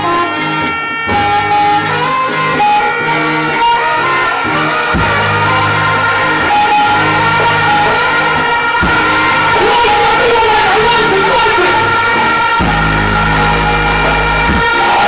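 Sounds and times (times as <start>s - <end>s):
guitar notes: 0.0s - 15.0s
repeating bass line: 0.0s - 15.0s.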